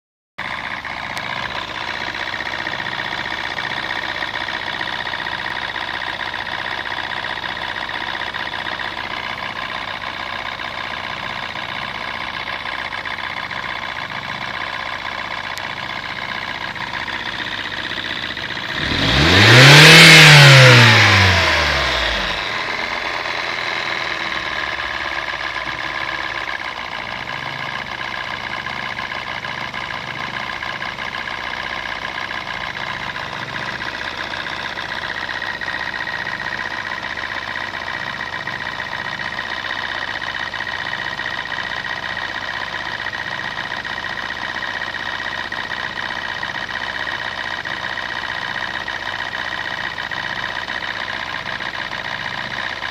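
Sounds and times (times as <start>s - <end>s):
car engine idling with whine: 0.4s - 52.9s
engine revving: 15.8s - 39.4s.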